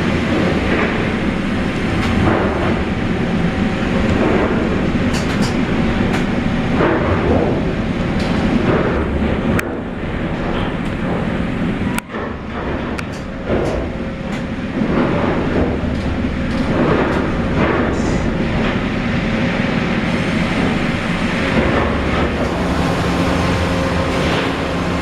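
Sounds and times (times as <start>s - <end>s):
band saw sawing logs: 22.3s - 25.0s.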